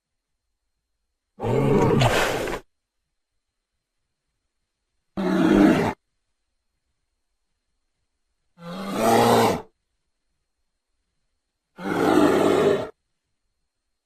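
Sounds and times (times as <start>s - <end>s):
low rough dinosaur calls: 5.2s - 6.0s, 8.6s - 9.7s, 11.8s - 13.0s.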